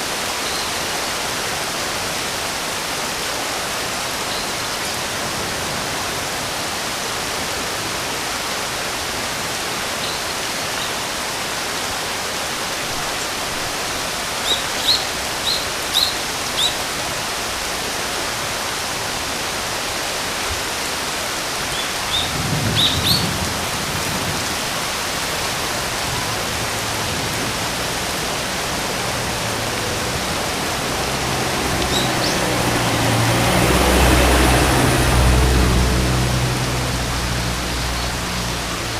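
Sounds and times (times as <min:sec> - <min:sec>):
rain hissing: 0:00.0 - 0:38.9
bird chirping: 0:31.8 - 0:32.5.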